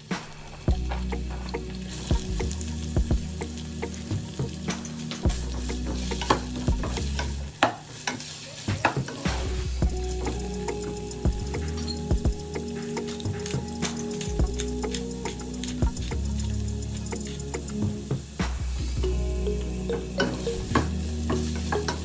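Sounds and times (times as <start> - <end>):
vegetables sizzling in a pan: 3.6 - 9.2.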